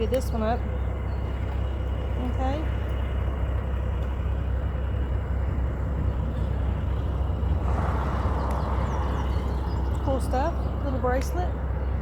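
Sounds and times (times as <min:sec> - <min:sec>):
road traffic rumble: 0:00.0 - 0:12.0
vehicle passing: 0:06.4 - 0:12.0.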